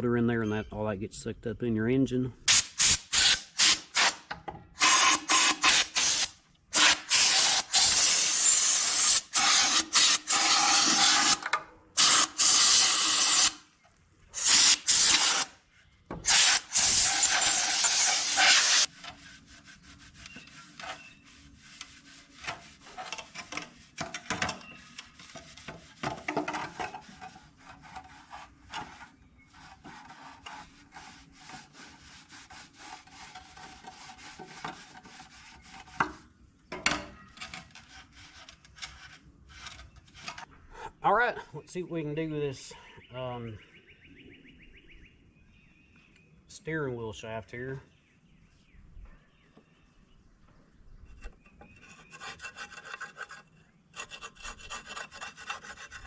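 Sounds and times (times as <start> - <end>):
hissing spray bursts: 2.5 - 4.2, 4.8 - 11.4, 12.0 - 13.6, 14.4 - 15.5, 16.2 - 18.9
rubbing and scraping: 2.5 - 11.4, 14.3 - 15.5, 16.2 - 36.4, 37.2 - 40.6, 51.0 - 56.0.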